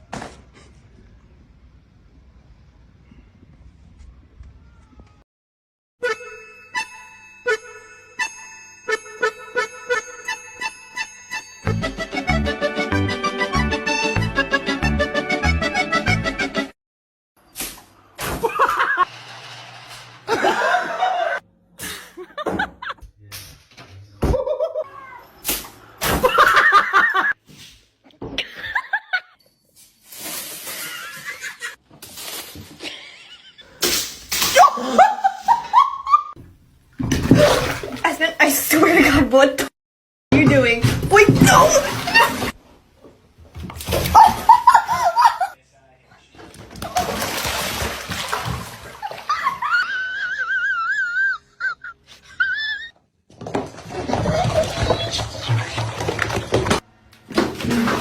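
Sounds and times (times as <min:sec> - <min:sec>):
person laughing: 0:20.3 - 0:23.0, 0:34.6 - 0:36.3, 0:44.2 - 0:45.6
splashing or scuffling: 0:33.8 - 0:35.8, 0:36.9 - 0:38.6, 0:40.7 - 0:42.6, 0:43.4 - 0:45.3, 0:46.6 - 0:49.8, 0:53.3 - 0:58.0.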